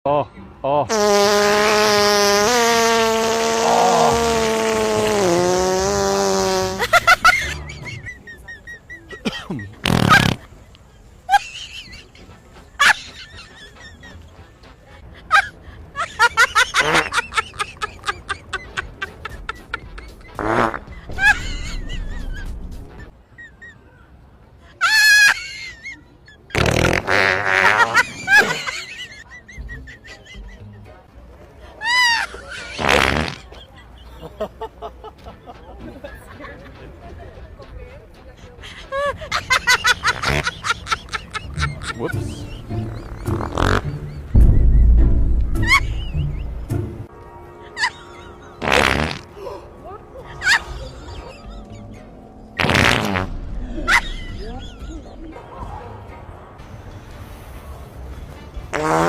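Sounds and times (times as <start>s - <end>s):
fart machine buzzing rasp: 0.9s - 6.9s, 9.8s - 10.4s, 48.6s - 49.2s, 52.6s - 53.4s.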